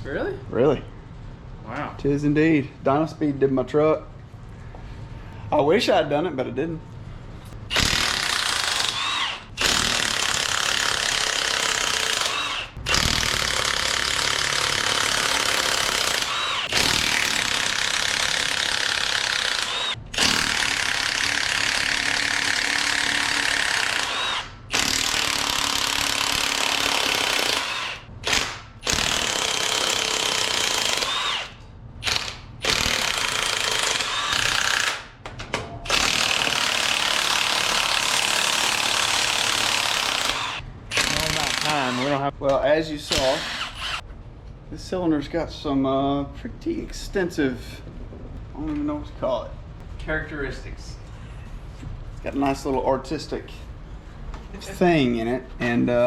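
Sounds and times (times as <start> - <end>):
impact wrench whirring: 7.7 - 35.1, 35.8 - 42.3, 43.1 - 44.0.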